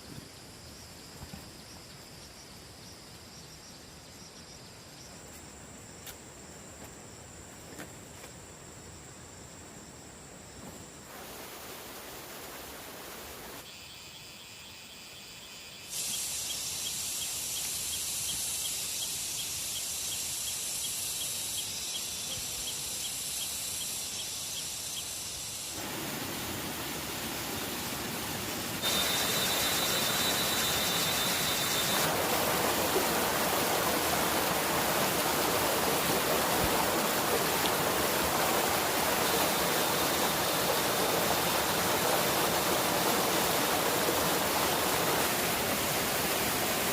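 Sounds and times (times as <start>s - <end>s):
thin high steady tone: 28.8s - 32.1s.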